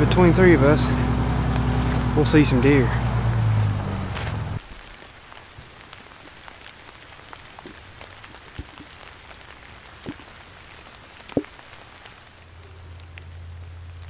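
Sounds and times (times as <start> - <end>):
light rain in woodland: 0.0 - 14.0
heavy water drips: 4.6 - 14.0.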